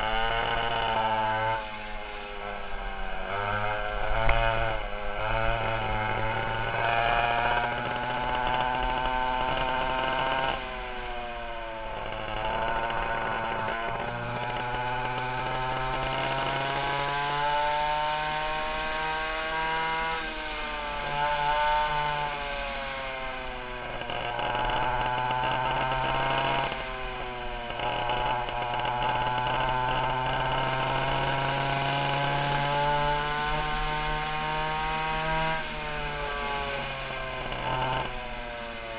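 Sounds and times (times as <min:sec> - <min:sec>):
go-kart engines revving: 0:00.0 - 0:38.9.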